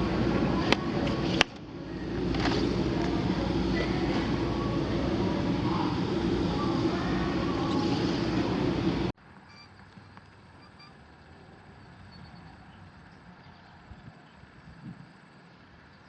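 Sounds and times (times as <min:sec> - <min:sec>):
loud rumbling noise: 0:00.0 - 0:09.2.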